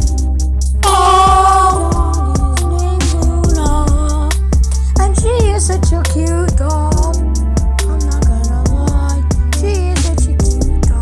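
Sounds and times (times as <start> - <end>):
song with beat and bass: 0.0 - 11.0
person singing: 0.8 - 4.4.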